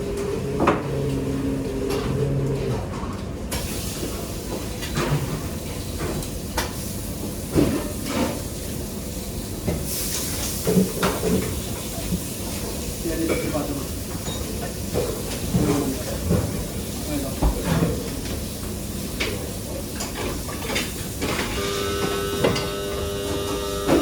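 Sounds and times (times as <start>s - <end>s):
pans and utensils clattering: 0.1s - 6.4s, 9.7s - 21.7s.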